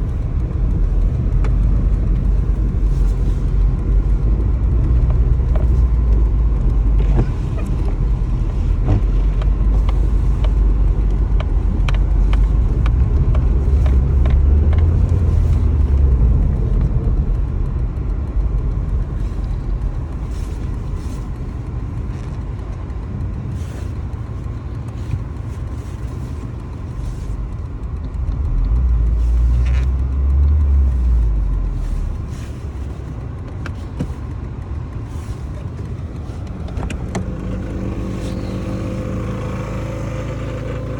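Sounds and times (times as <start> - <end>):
car engine rumbling: 0.0 - 40.9.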